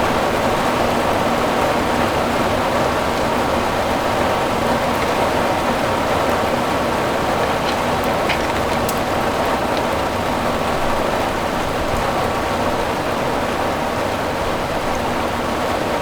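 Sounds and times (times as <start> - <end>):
rain on a metal roof: 0.0 - 16.0.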